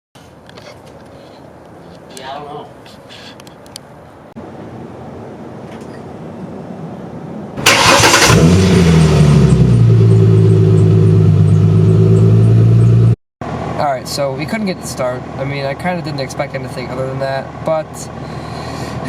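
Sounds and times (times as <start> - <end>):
car engine starting and idling: 7.6 - 14.4.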